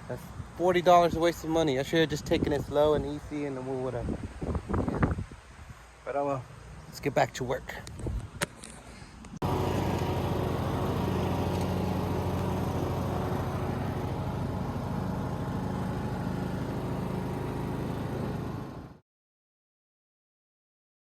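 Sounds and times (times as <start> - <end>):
riding mower engine running: 9.4 - 19.0.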